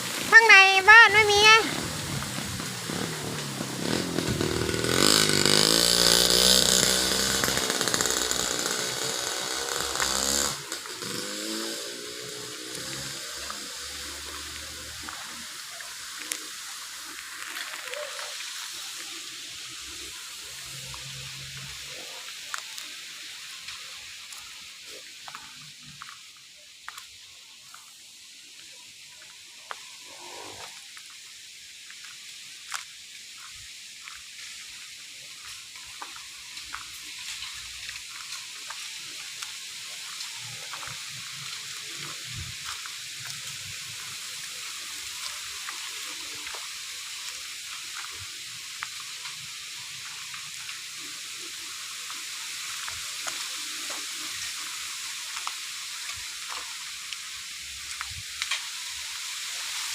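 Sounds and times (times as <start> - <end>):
wind rustling bamboo leaves: 0.0 - 59.9
low rumbling of gusts: 1.7 - 4.7.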